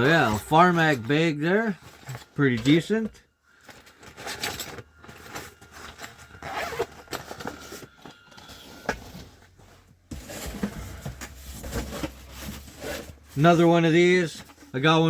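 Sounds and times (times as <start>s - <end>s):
zipper pulled open: 5.6s - 7.9s.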